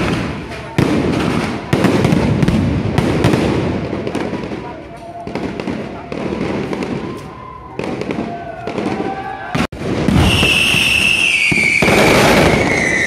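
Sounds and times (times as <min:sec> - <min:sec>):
shrill descending whistle: 0:10.2 - 0:13.0.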